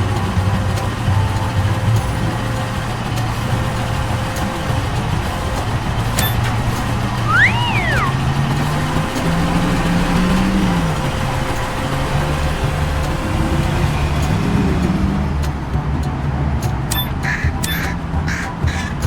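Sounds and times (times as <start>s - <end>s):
truck engine running: 0.0s - 19.0s
short squeal: 7.2s - 8.4s.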